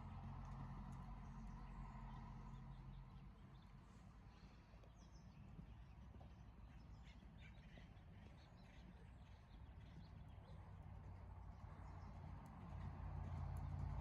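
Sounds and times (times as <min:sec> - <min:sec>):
low background rumble: 0:11.5 - 0:14.0.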